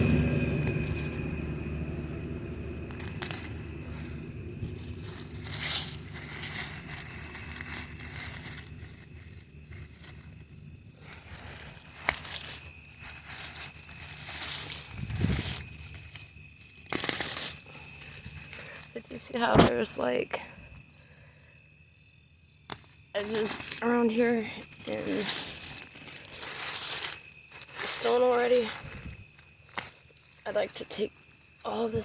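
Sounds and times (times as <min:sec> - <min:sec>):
car passing: 0:00.0 - 0:06.2
crickets chirping: 0:00.0 - 0:32.0.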